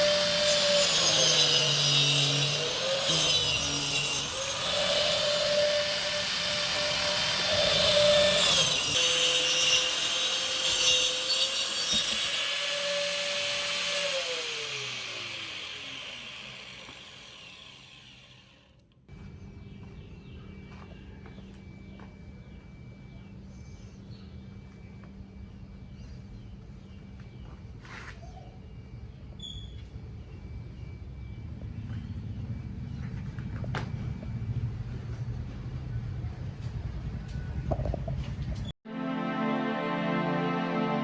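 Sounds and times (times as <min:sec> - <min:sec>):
grinder disc spinning down: 0:00.0 - 0:18.7
angle grinder whining: 0:00.0 - 0:18.8.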